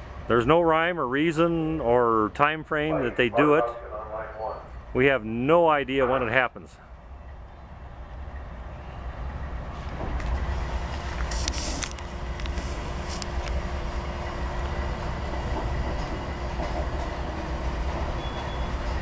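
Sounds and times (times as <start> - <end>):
diesel locomotive rumble: 0.0 - 19.0
short hiss: 11.1 - 13.4.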